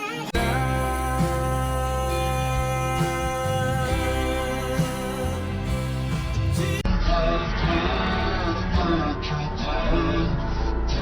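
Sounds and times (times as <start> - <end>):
instrumental music with held chords: 0.0 - 6.8
bass line: 0.4 - 11.0.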